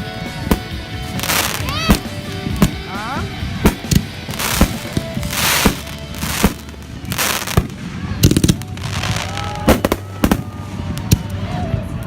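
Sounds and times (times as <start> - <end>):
hissing crackling fireworks: 0.1 - 11.6
firework bangs: 0.4 - 11.4
string of firework pops: 3.6 - 11.4.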